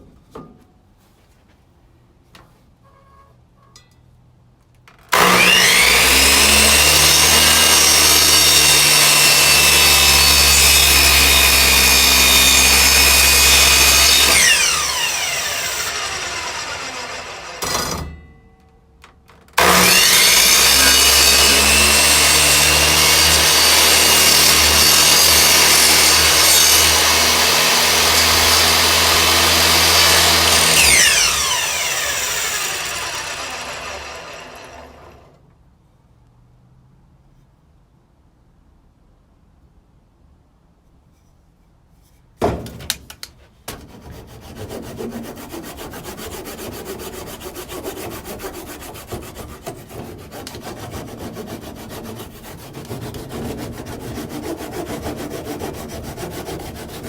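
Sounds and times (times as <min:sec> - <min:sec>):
electric miter saw cutting wood: 0:05.1 - 0:18.0, 0:19.6 - 0:35.4, 0:44.2 - 0:57.0.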